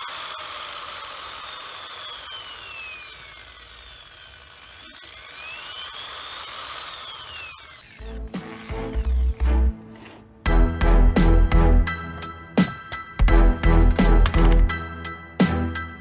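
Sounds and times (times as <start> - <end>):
power tool motor whining: 0.0 - 12.8
music: 8.0 - 16.0.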